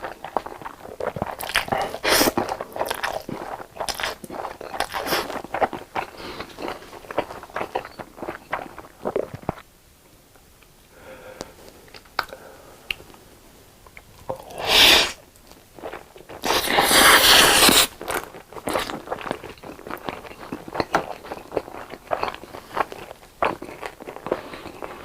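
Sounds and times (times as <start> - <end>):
crispy food crunching: 0.0 - 9.6, 15.4 - 25.0
mouth clicks and chewing: 0.0 - 9.6, 15.4 - 25.0.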